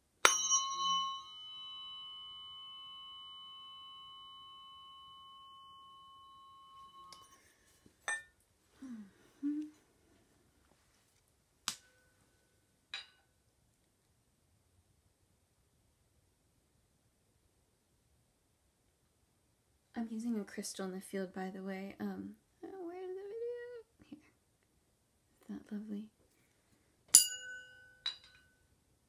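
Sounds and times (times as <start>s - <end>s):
tuning forks ringing: 0.2s - 7.5s, 27.1s - 28.6s.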